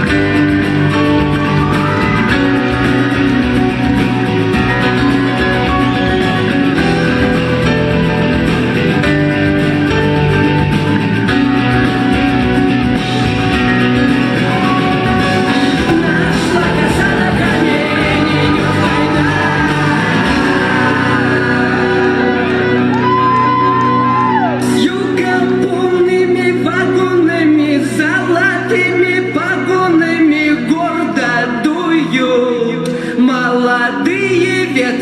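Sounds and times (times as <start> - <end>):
band playing a song: 0.0 - 27.2
wordless singing: 14.1 - 23.0.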